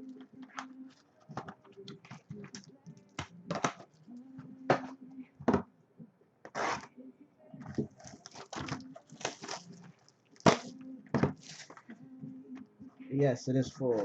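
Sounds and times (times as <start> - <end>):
card boxes and wrappers crinkling: 7.6 - 11.9.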